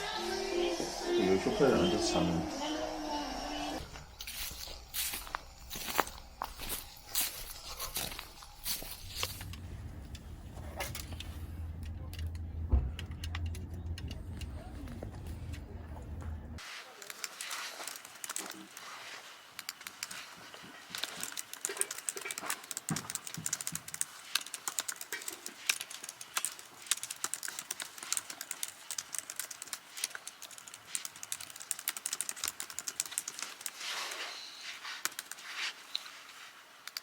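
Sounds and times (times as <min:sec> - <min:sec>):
rapid small clicks and taps: 0:17.0 - 0:34.2, 0:34.8 - 0:36.2, 0:36.8 - 0:37.0.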